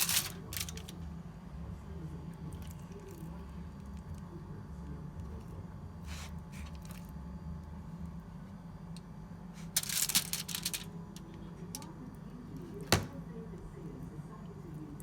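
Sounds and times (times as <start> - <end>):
crinkling rustle: 0.0 - 1.0, 9.6 - 10.9
low steady hum: 0.0 - 15.0.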